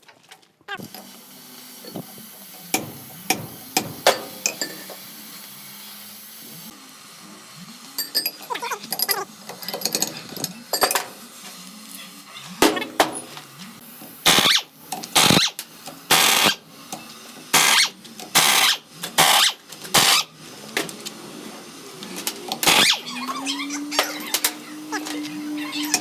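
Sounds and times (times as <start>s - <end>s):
power tool bursts: 0.8s - 6.7s, 12.5s - 20.4s, 22.1s - 26.0s.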